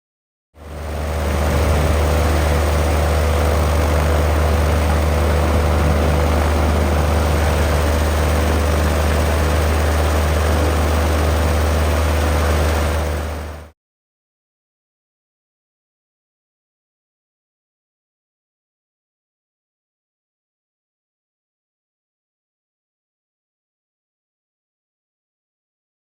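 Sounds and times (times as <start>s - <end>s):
aircraft engine droning: 0.6s - 13.7s
steady hum: 0.6s - 13.7s.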